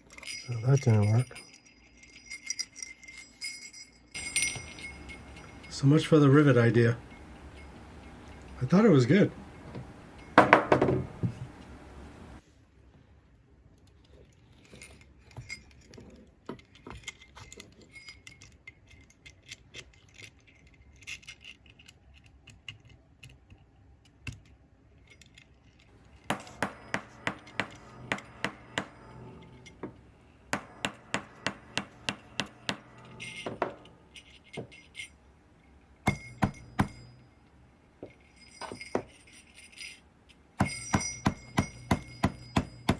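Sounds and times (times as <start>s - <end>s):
sleigh bells jingling: 0.0s - 11.9s, 25.9s - 35.3s, 38.0s - 42.9s
sharp evenly spaced strokes: 26.1s - 34.5s.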